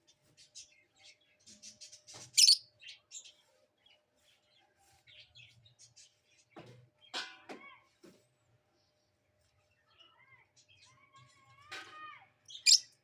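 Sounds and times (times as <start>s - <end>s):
lovebirds chirping: 1.2s - 3.3s, 12.5s - 13.0s.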